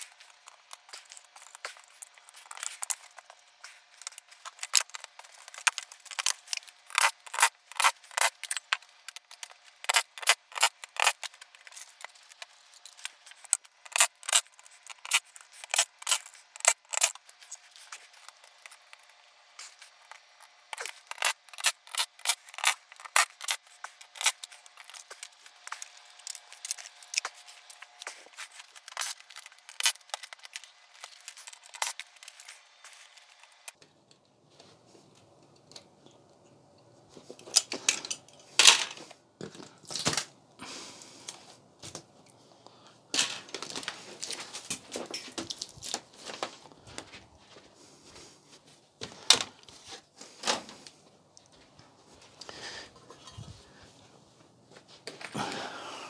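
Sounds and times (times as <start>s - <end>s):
tools and plastic parts clinking: 0.0s - 33.8s, 43.1s - 46.4s.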